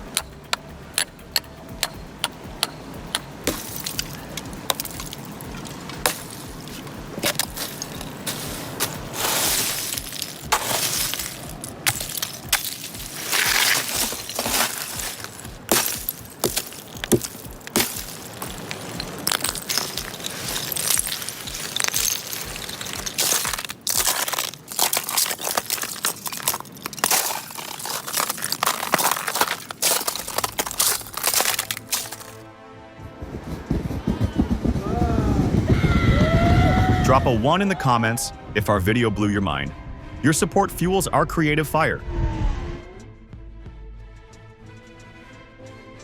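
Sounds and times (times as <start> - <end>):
ice cracking and breaking: 3.5 - 32.4.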